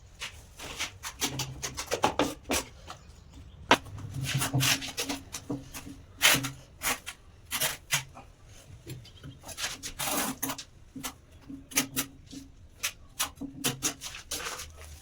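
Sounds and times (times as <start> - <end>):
sharp knocks: 3.7 - 4.6
hand tools scraping and tapping: 3.7 - 15.0.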